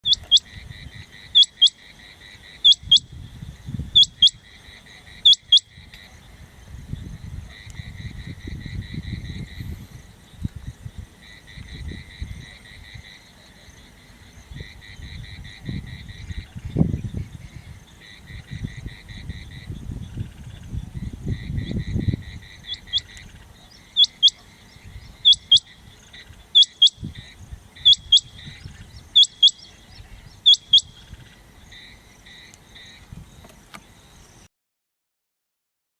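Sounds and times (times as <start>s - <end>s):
quail whistled calls: 0.0s - 1.8s, 2.6s - 3.2s, 3.9s - 4.4s, 5.1s - 6.0s, 21.5s - 25.8s, 26.6s - 31.1s.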